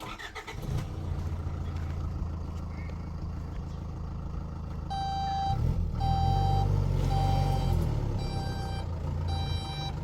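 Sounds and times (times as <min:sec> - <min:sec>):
vehicle engine running: 0:00.1 - 0:10.0
reversing alarm beeping: 0:04.9 - 0:10.0.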